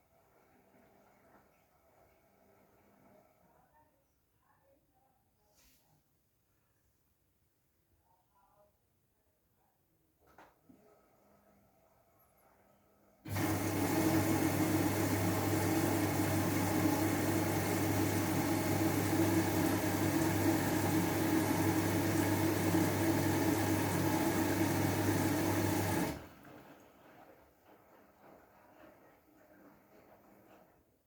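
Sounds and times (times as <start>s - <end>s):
washing machine water inlet rushing: 13.3s - 29.0s.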